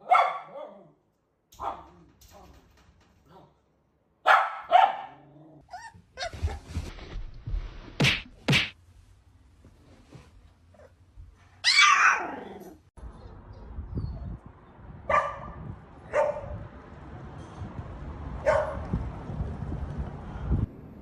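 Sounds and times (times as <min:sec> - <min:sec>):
dog barking: 0:00.0 - 0:00.9, 0:01.6 - 0:01.9, 0:04.2 - 0:05.2, 0:15.1 - 0:16.6, 0:18.4 - 0:18.8
dog yelping: 0:11.6 - 0:12.5.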